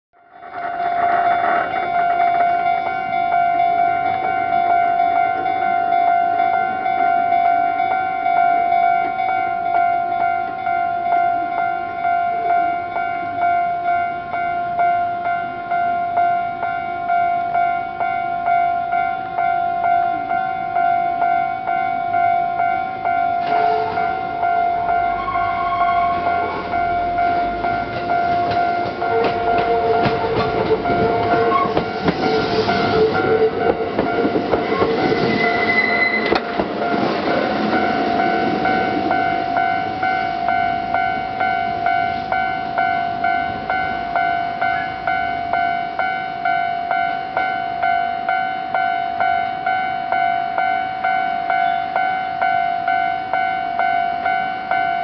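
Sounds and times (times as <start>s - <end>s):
train passing through station: 0.2s - 55.0s
train wheel squeal: 0.4s - 2.9s, 23.4s - 24.2s, 25.0s - 27.0s, 28.1s - 40.2s
warning bell ringing: 0.5s - 55.0s.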